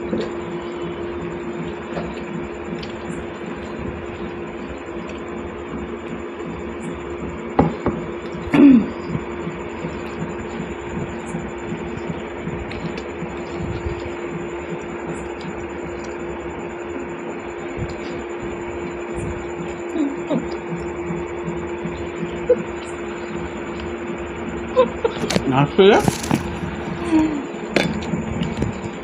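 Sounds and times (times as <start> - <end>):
steady hum: 0.0 - 29.0
squishing of food mixed by hand: 0.1 - 29.0.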